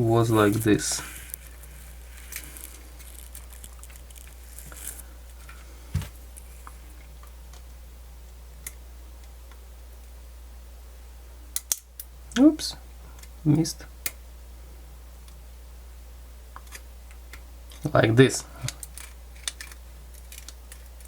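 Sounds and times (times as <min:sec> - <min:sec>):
steady low hum: 0:00.0 - 0:21.0
small parts and tools clicking: 0:18.6 - 0:21.0.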